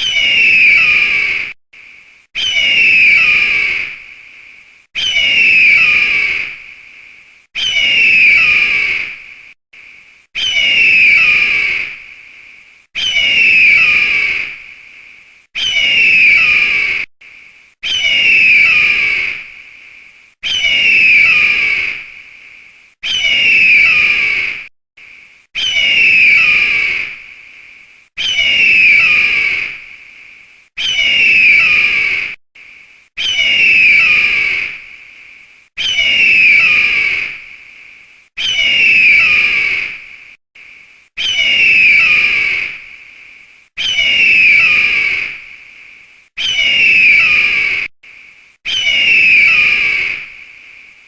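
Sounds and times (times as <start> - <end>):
eagle screeching: 0.0 - 1.5, 2.4 - 4.0, 5.0 - 6.6, 7.6 - 9.2, 10.4 - 12.0, 13.0 - 14.6, 15.6 - 17.1, 17.8 - 19.5, 20.4 - 22.1, 23.0 - 24.6, 25.6 - 27.2, 28.2 - 29.8, 30.8 - 32.4, 33.2 - 34.8, 35.8 - 37.4, 38.4 - 40.0, 41.2 - 42.8, 43.8 - 45.4, 46.4 - 47.9, 48.7 - 50.3.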